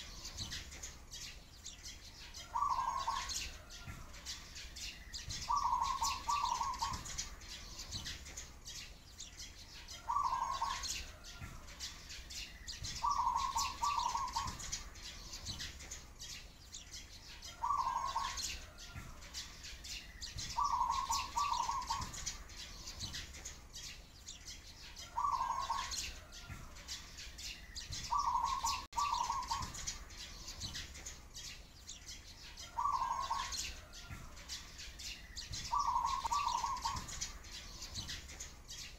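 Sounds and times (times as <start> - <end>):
sparrows chirping: 0.0 - 38.9
dove cooing: 2.4 - 3.9, 5.3 - 7.3, 10.0 - 11.5, 12.9 - 14.8, 17.5 - 18.8, 20.6 - 22.2, 25.0 - 26.1, 28.1 - 29.9, 32.7 - 33.6, 35.7 - 37.2.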